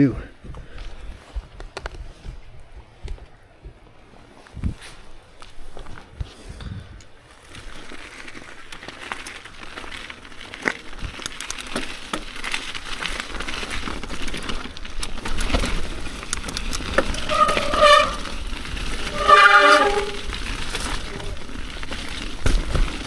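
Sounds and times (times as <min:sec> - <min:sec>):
bike tyres rolling over roots: 0:00.0 - 0:23.0
bike chain and frame rattling: 0:07.2 - 0:23.0
disc brakes squealing: 0:16.9 - 0:21.6.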